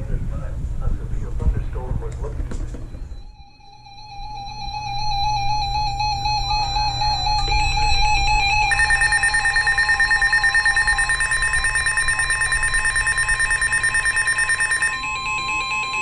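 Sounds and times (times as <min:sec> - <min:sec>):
steady alarm tone: 0:03.1 - 0:16.0
rapidly pulsing electronic alert tone: 0:03.2 - 0:16.0.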